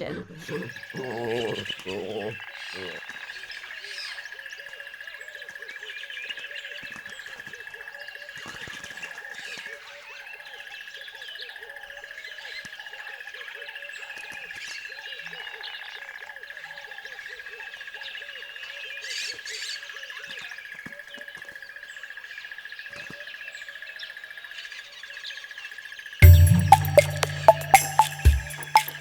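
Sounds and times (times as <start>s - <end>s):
steady high-pitched tone: 26.2s - 29.0s.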